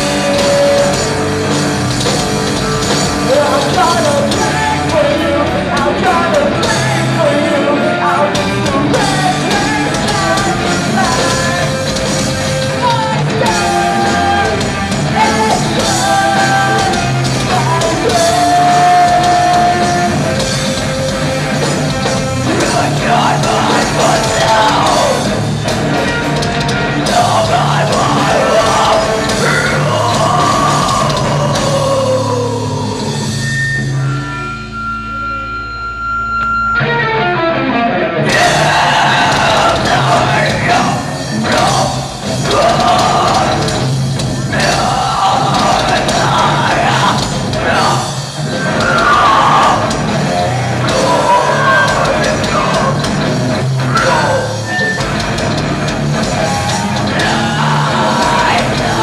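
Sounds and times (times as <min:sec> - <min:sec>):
person singing: 0:00.0 - 0:01.5, 0:02.8 - 0:20.6, 0:22.4 - 0:25.3, 0:27.0 - 0:33.3, 0:38.2 - 0:43.8, 0:44.5 - 0:53.1, 0:56.3 - 0:59.0
live rock band playing: 0:00.0 - 0:59.0.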